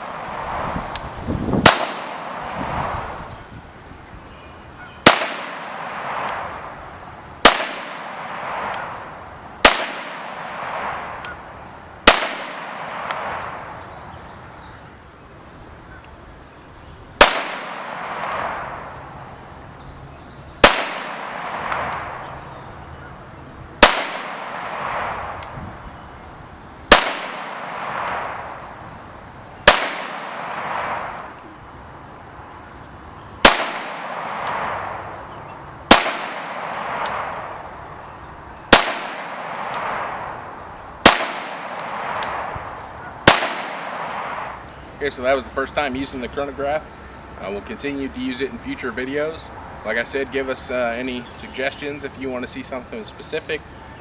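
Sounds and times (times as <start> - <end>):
rolling echo: 0.0 - 3.4, 4.8 - 14.0, 17.2 - 19.6, 20.2 - 26.0, 26.9 - 32.8, 33.4 - 54.0
pistol shots: 1.6 - 2.6, 5.0 - 6.7, 7.4 - 11.4, 12.0 - 13.7, 17.2 - 19.0, 20.6 - 22.5, 23.8 - 25.5, 26.9 - 28.7, 29.6 - 31.4, 33.4 - 35.0, 35.9 - 37.5, 38.7 - 40.4, 41.0 - 44.7.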